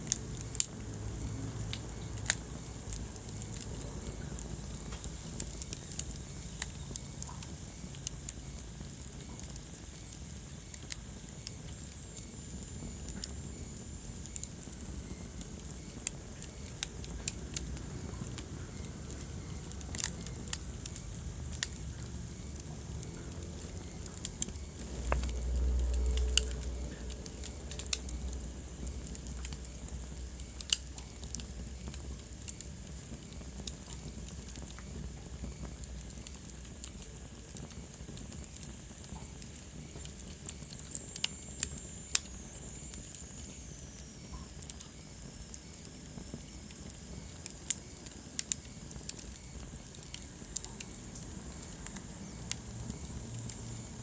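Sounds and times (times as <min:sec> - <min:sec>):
low rumble of flames: 0:00.0 - 0:54.0
wood fire crackling and popping: 0:00.0 - 0:54.0.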